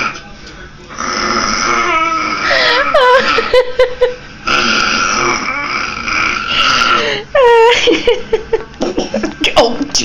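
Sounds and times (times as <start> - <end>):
burps and gurgling vocal noises: 0.9 - 2.5, 4.4 - 7.0.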